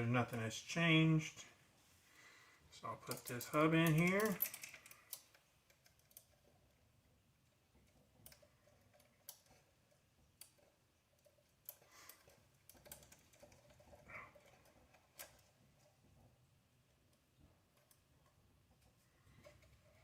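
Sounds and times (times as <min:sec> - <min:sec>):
small plastic parts clicking: 0:03.0 - 0:06.9, 0:07.7 - 0:16.3.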